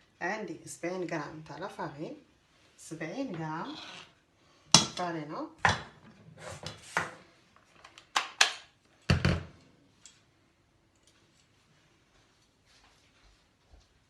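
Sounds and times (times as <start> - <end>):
utensils and containers scraping: 3.4 - 4.2, 6.0 - 7.2.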